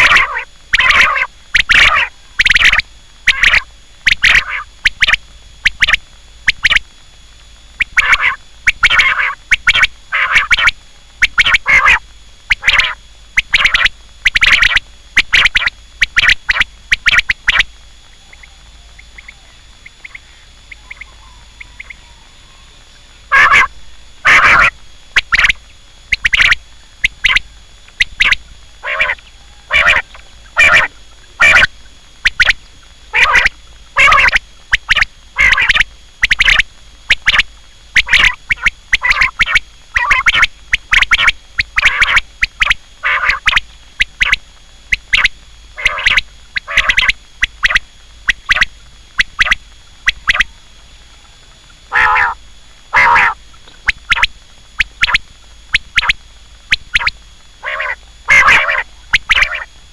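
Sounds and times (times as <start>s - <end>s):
quail calling: 0.0s - 6.8s, 7.8s - 50.6s, 51.9s - 55.2s, 55.8s - 59.7s.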